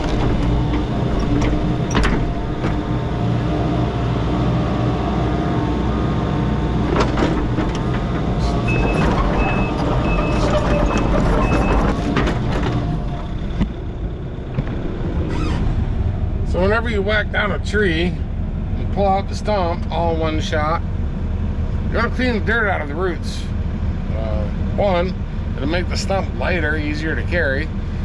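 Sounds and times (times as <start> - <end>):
heavy equipment engine running: 0.0 - 28.0
backup alarm beeping: 8.6 - 12.0.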